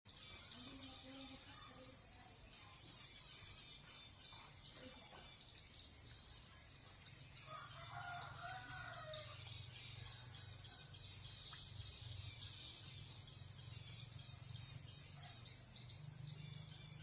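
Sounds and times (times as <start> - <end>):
insects droning: 0.1 - 17.0
faint rooster crowing: 7.4 - 11.1.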